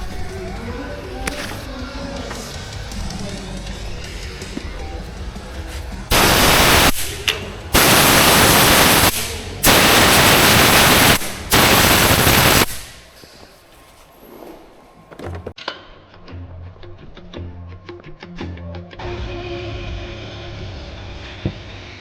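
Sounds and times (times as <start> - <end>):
loud hissing blasts: 6.1 - 13.2.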